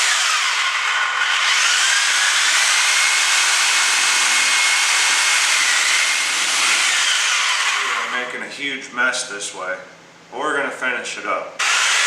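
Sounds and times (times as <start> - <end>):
power saw cutting frozen meat: 0.0 - 8.2, 11.6 - 12.0.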